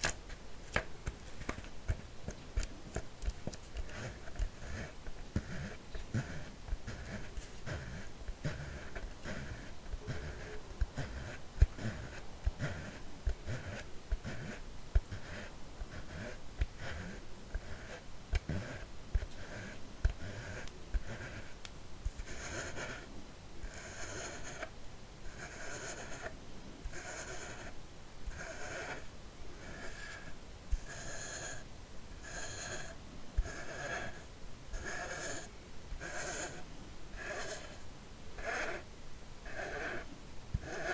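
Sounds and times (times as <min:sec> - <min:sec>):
plastic bottle being handled: 0:00.0 - 0:04.4.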